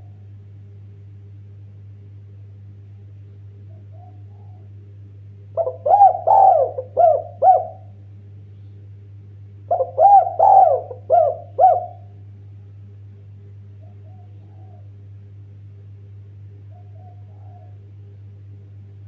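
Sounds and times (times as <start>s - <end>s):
steady low hum: 0.0s - 19.0s
dove cooing: 3.7s - 4.8s, 5.6s - 8.0s, 9.7s - 12.2s, 13.8s - 15.0s, 16.6s - 18.0s.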